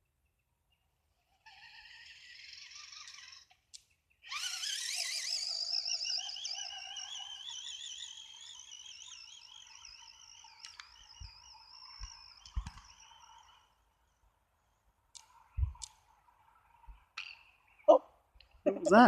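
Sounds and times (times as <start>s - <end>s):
remote-control car motor whining: 1.1s - 13.9s.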